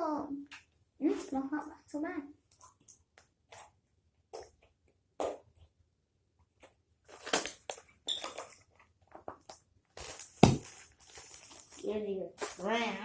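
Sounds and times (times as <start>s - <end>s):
packaging rustling: 10.0s - 11.8s.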